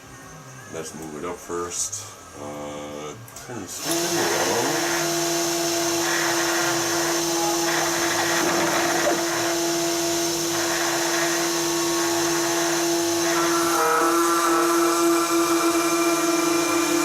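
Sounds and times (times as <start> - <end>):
router spindle motor running: 3.8 - 17.0
stepper motors whining: 3.8 - 17.0.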